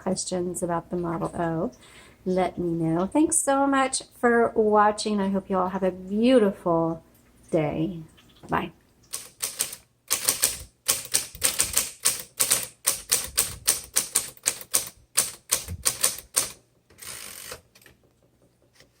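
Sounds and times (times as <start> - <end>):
manual typewriter typing: 9.1 - 18.0.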